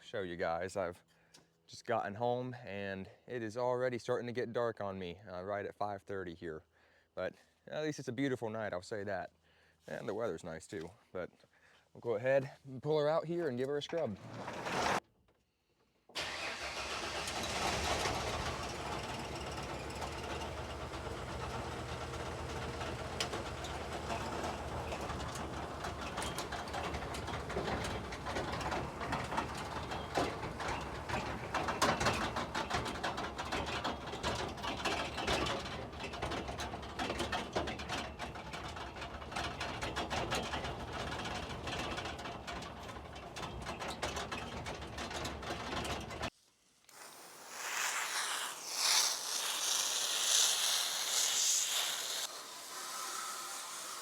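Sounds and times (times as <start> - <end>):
engine running: 16.2 - 46.3, 47.2 - 54.0.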